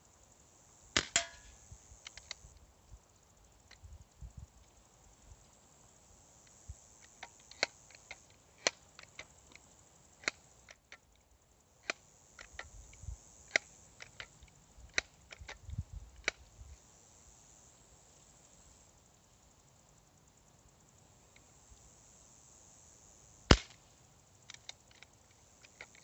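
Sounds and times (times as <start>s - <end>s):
bb gun snaps: 1.0s - 1.5s, 23.5s - 23.8s
faint clicks: 2.0s - 2.7s, 24.4s - 26.0s.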